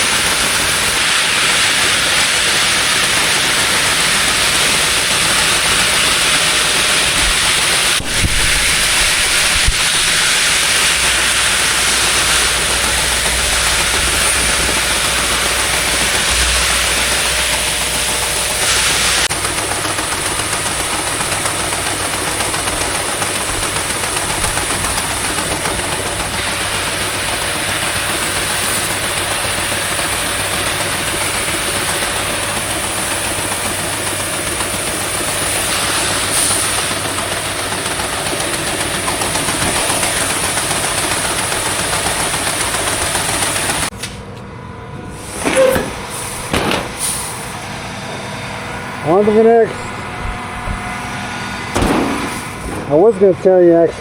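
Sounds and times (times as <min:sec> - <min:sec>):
engine running: 0:00.0 - 0:54.0
seed pouring hiss: 0:05.6 - 0:17.4, 0:18.5 - 0:19.3.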